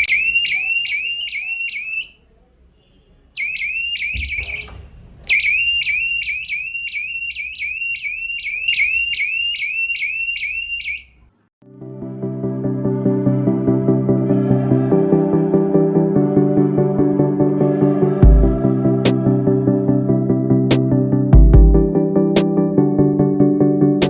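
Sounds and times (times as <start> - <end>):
alarm buzzer warbling chirps: 0.0 - 2.2, 3.4 - 11.2
background music: 11.6 - 24.0.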